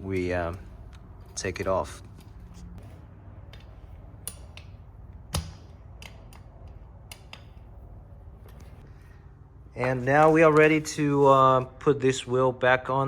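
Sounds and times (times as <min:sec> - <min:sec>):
metal parts and tools clicking: 0:00.0 - 0:08.9.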